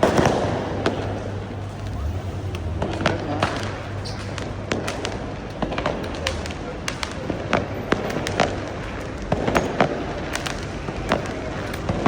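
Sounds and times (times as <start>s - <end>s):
firecrackers banging and popping: 0.0s - 12.0s
rumble of distant fireworks: 0.0s - 12.0s.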